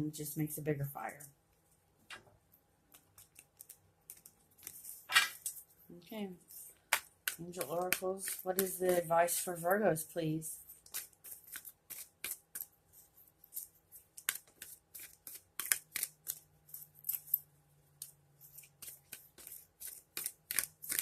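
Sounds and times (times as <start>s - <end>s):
cards being shuffled: 2.9s - 5.7s, 10.8s - 17.3s, 18.0s - 21.0s.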